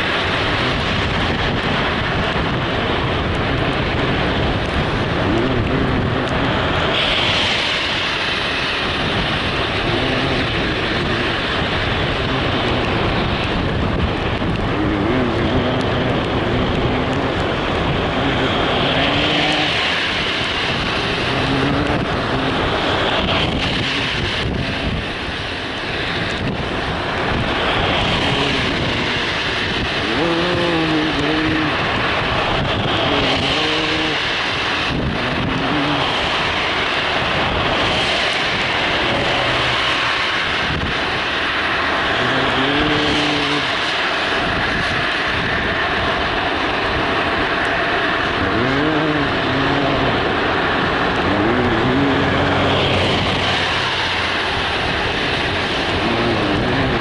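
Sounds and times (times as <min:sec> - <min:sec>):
car road and wind noise: 0:00.0 - 0:57.0
rising and falling pitched tone: 0:48.4 - 0:50.2.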